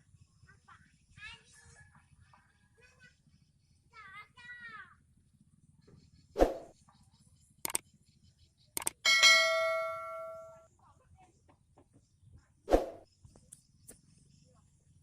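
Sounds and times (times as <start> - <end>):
sharp clicks: 8.8 - 9.0
metal object ringing: 9.0 - 10.6.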